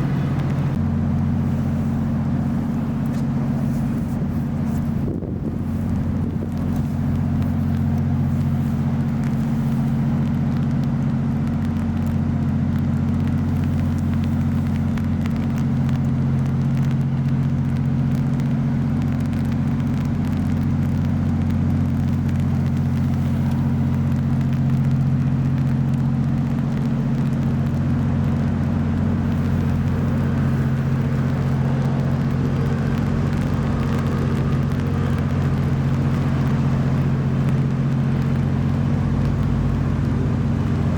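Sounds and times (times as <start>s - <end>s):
low engine drone: 0.0s - 40.9s.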